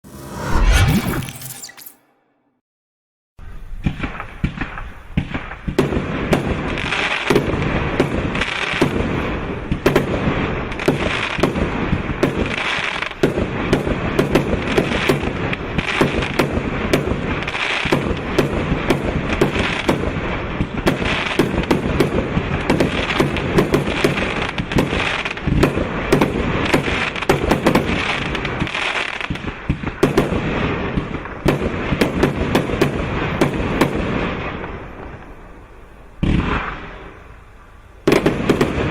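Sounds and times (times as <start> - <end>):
fireworks launching and bursting: 38.1 - 38.9.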